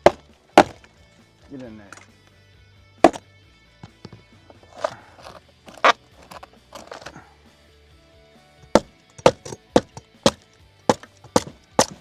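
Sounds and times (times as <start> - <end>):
tool prying and scraping wood: 0.0 - 0.9, 3.0 - 3.2, 4.6 - 7.2, 8.6 - 12.0
quiet background music: 0.0 - 12.0
sharp knocks: 8.8 - 12.0.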